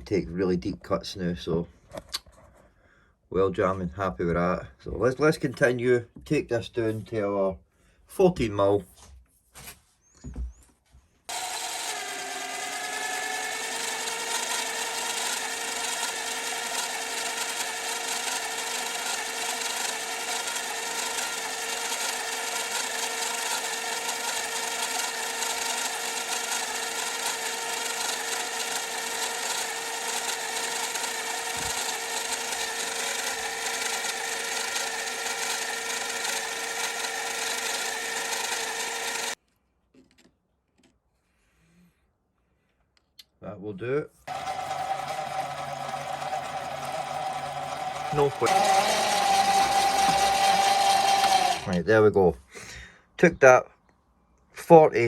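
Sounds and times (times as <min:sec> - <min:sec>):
lathe motor and gear whine: 0:11.3 - 0:39.4, 0:44.3 - 0:51.7
rasping cutting noise: 0:11.3 - 0:39.4, 0:44.3 - 0:51.8.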